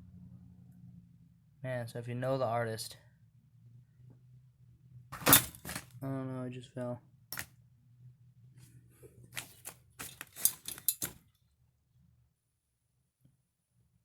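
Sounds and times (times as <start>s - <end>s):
hard objects clicking and knocking: 5.2s - 5.8s, 9.4s - 11.2s.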